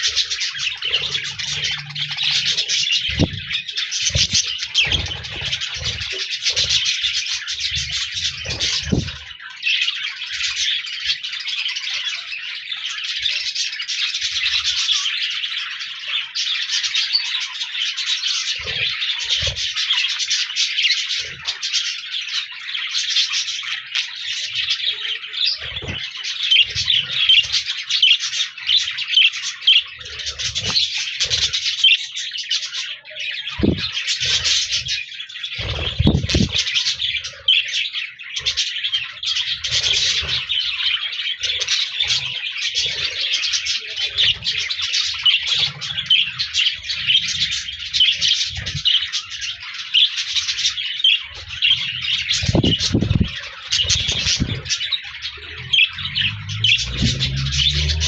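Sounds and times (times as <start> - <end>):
budgerigars chattering and warbling: 0.0 - 58.0
low thumps: 3.1 - 5.6, 33.6 - 33.9, 35.9 - 36.6, 55.9 - 58.0.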